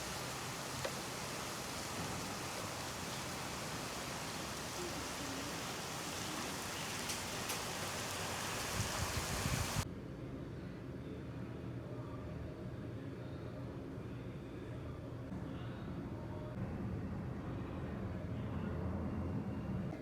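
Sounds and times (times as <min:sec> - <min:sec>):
steady rain falling: 0:00.0 - 0:09.8.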